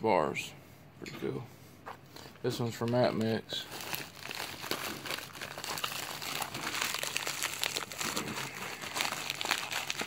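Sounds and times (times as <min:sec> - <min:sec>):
packaging rustling and crackling: 0:02.1 - 0:10.0.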